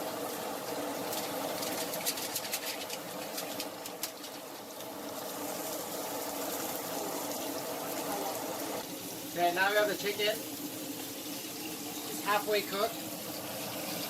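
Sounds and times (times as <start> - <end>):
chicken sizzling in a frying pan: 0.0 - 14.0
oil crackling and spitting: 0.8 - 5.6.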